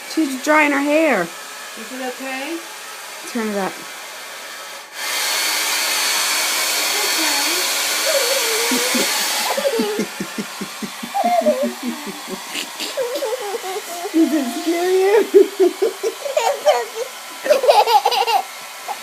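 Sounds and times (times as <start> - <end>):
hair dryer running: 0.0 - 19.0
young child vocalizing: 6.9 - 17.2.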